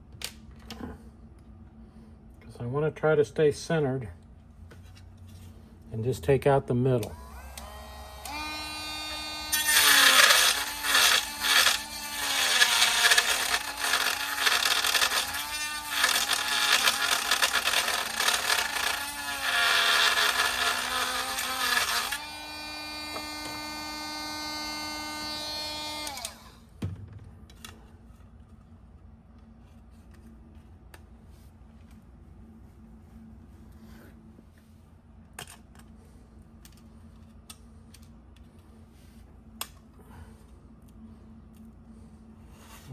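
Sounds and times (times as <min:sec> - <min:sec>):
rotary tool whining: 0:07.1 - 0:26.7.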